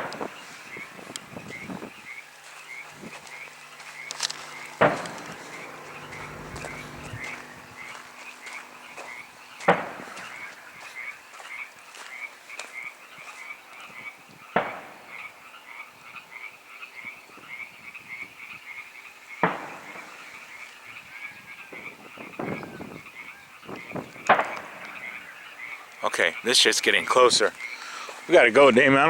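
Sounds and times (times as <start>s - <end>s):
frogs croaking: 0.0s - 28.4s
loud booms: 4.2s - 10.5s.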